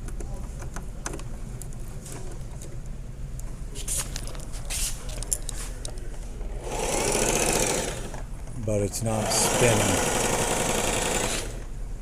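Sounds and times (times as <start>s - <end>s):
steady low hum: 0.0s - 12.0s
sewing machine motor whirring: 6.6s - 8.2s, 9.2s - 11.6s.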